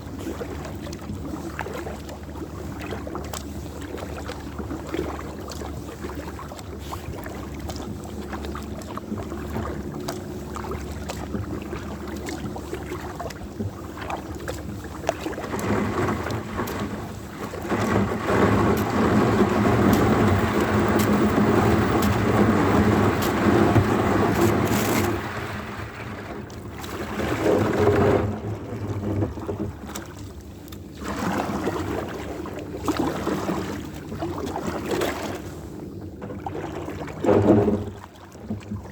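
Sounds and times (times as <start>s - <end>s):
water sounds from kayak: 0.0s - 38.9s
wind buffeting microphone: 13.3s - 29.8s.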